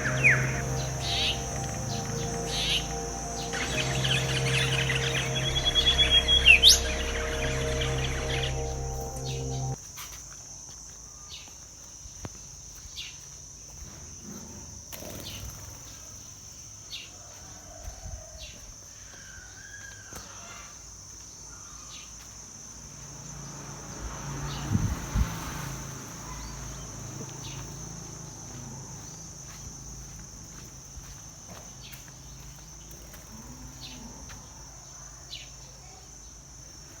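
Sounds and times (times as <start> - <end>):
bird chirping: 0.0 - 9.8
high-pitched insect drone: 0.0 - 9.8.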